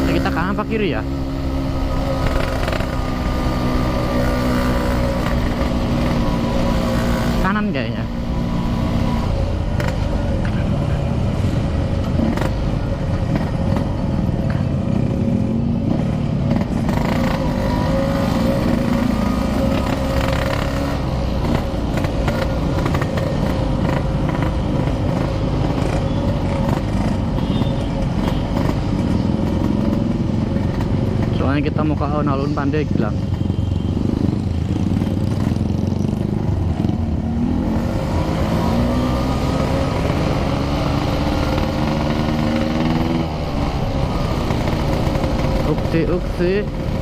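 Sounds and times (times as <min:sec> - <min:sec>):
motorcycle engine running: 0:00.0 - 0:47.0.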